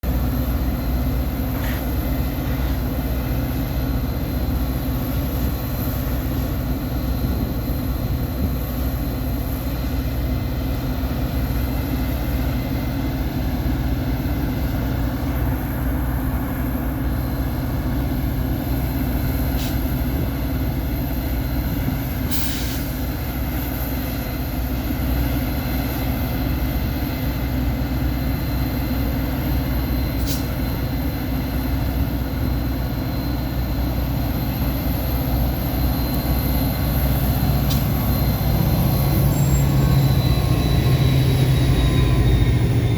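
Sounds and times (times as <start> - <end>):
diesel locomotive rumbling: 0.0 - 42.9
short hiss: 22.3 - 23.0, 30.2 - 30.6.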